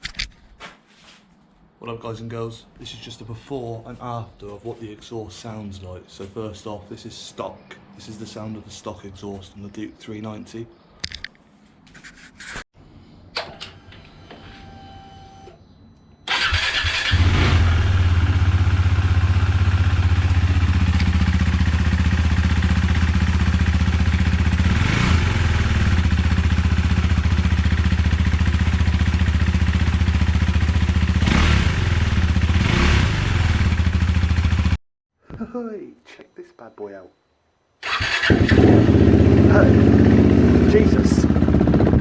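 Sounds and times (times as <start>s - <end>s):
motorcycle engine idling and revving: 16.3s - 34.8s, 37.8s - 42.0s.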